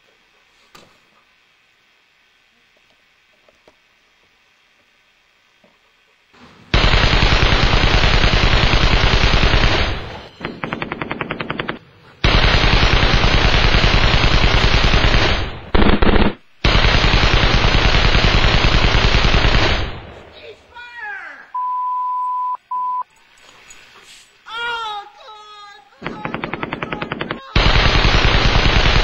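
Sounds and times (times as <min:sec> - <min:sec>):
automatic gunfire bursts: 0:06.7 - 0:20.2, 0:26.0 - 0:29.0.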